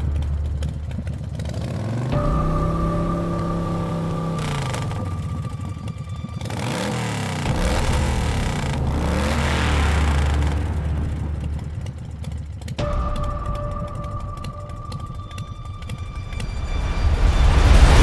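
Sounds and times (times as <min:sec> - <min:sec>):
vehicle engine revving: 0:00.0 - 0:13.2
steady high tone: 0:01.9 - 0:12.2, 0:12.8 - 0:18.0.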